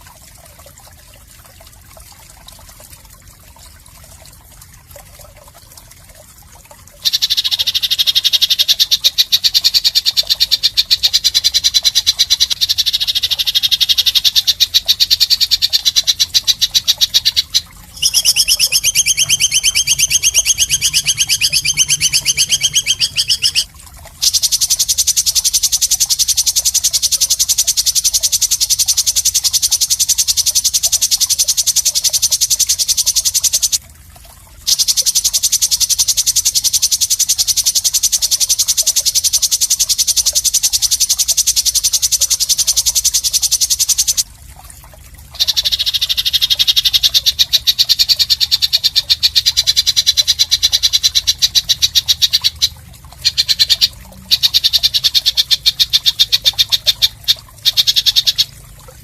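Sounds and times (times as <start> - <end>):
high-pitched buzzing bird trill: 7.0 - 33.8, 45.4 - 58.5.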